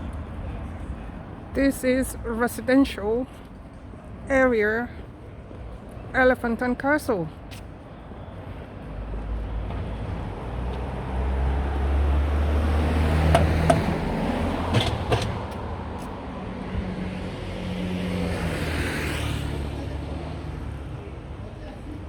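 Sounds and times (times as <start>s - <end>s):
vehicle engine rumble passing: 8.9s - 22.0s.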